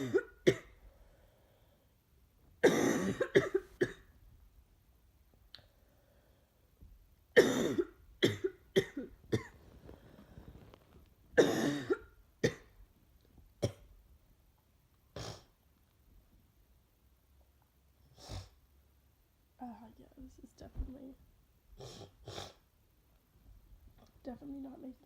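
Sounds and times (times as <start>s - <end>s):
woman coughing: 0.0s - 0.7s, 2.6s - 4.1s, 7.4s - 9.6s, 11.4s - 12.7s.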